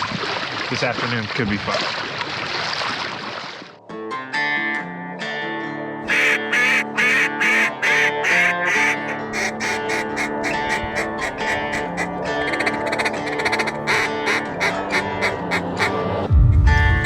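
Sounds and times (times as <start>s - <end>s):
plucked guitar music: 3.9s - 17.0s
loud duck quacks: 6.1s - 17.0s.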